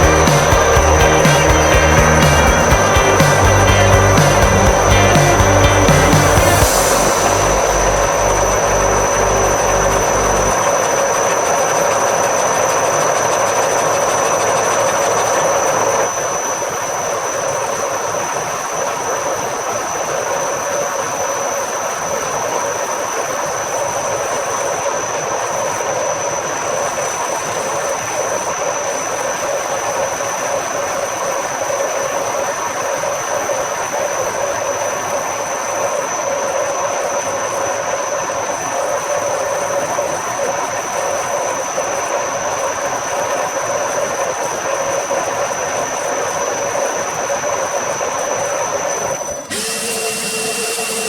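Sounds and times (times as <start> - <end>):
machining noise: 0.0 - 18.6, 45.4 - 51.0
machine tool high whine: 0.0 - 51.0.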